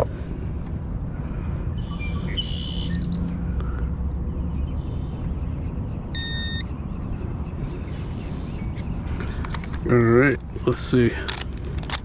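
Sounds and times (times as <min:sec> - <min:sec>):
low background rumble: 0:00.0 - 0:12.0
short electronic beep: 0:06.1 - 0:06.7.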